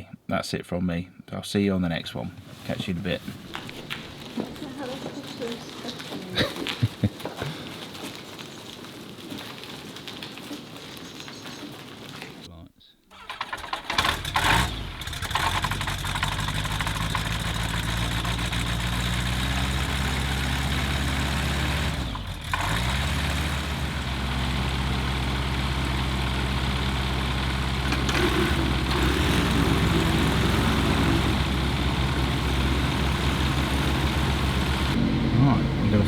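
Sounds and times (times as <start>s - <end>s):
engine idling: 13.2s - 36.0s
higher engine note: 14.0s - 36.0s.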